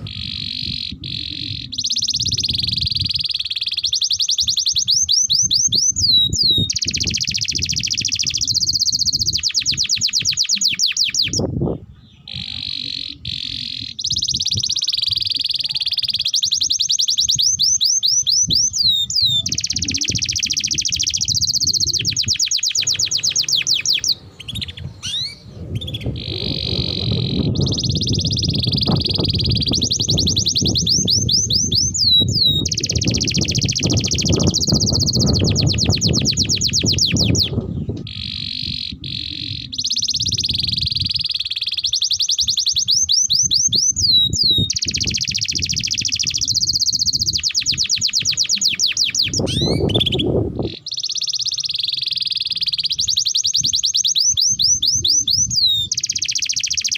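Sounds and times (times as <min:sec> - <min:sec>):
low rumbling noise: 0:00.0 - 0:03.4, 0:18.7 - 0:41.3, 0:48.2 - 0:50.9
canary singing trills: 0:00.0 - 0:56.9.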